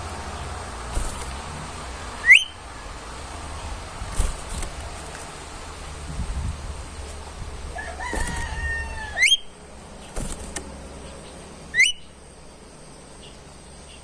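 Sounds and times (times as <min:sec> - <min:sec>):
bird whistling whip call: 0:02.2 - 0:02.6, 0:09.2 - 0:09.5, 0:11.7 - 0:12.1.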